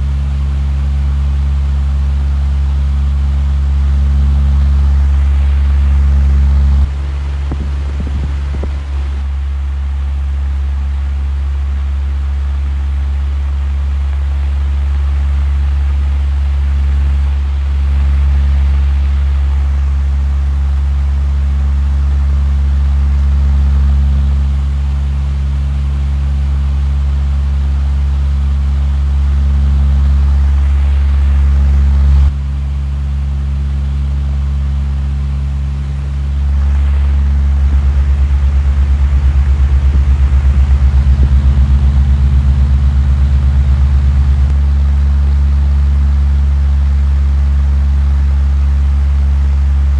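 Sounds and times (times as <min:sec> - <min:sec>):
heavy machinery engine droning: 0:04.0 - 0:09.7, 0:29.0 - 0:32.4, 0:35.6 - 0:46.3.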